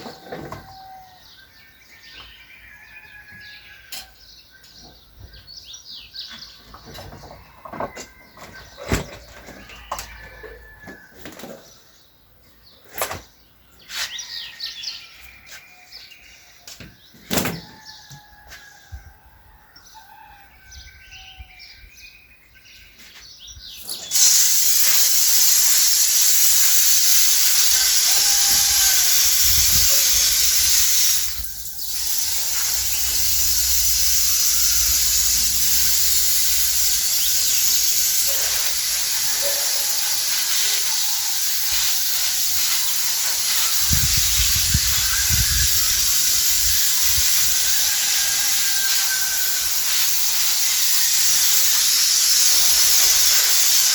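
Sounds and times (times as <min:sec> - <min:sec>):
loud steady hiss: 0:23.8 - 0:53.9.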